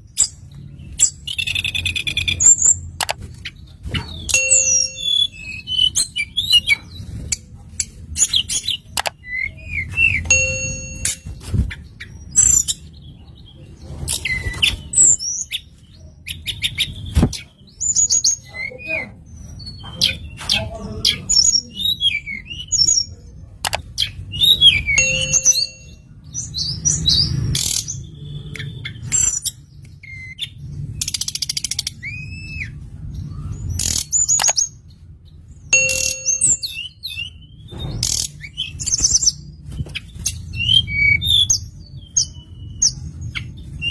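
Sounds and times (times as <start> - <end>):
bird song chirps and trills: 0.0 - 43.9
sharp clicks: 8.9 - 9.2.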